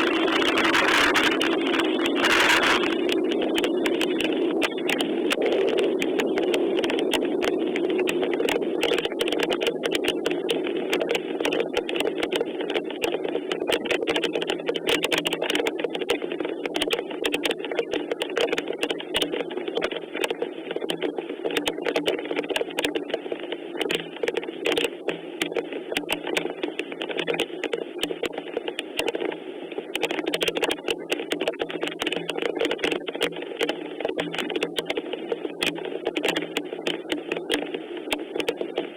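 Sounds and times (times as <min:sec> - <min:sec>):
raindrops striking: 0:00.0 - 0:12.9.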